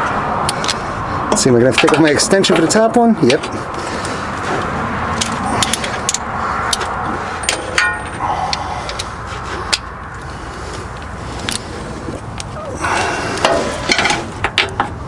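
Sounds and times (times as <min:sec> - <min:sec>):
background hum: 0:03.4 - 0:15.0
hand tools clinking: 0:05.2 - 0:09.1.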